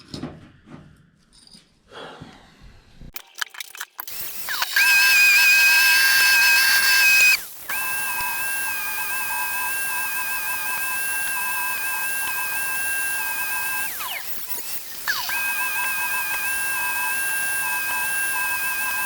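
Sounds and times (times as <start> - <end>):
welding arc whine: 4.1 - 19.0.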